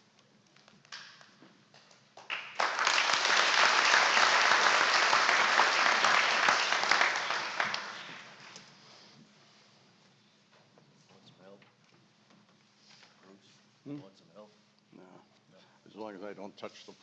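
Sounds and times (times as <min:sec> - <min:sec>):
audience applauding: 0:02.2 - 0:08.6.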